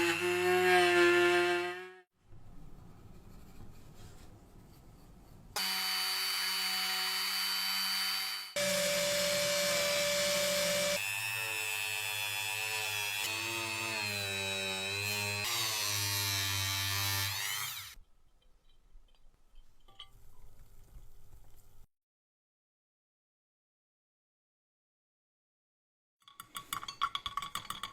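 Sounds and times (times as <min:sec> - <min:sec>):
handheld power tool running: 0:05.6 - 0:18.0.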